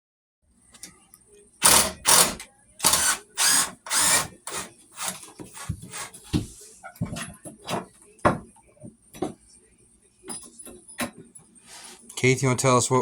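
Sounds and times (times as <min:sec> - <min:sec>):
power drill bursts: 0:01.6 - 0:06.1.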